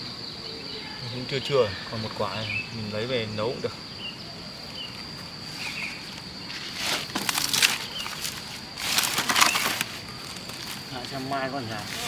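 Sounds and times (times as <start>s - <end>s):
insects chirring: 0.0s - 12.0s
close rustling and crackling: 5.0s - 12.0s.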